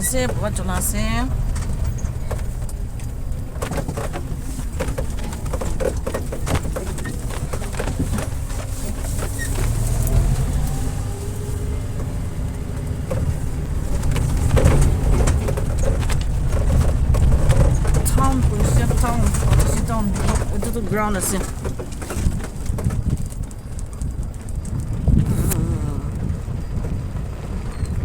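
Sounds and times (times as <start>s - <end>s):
low rumble: 22.7s - 28.0s.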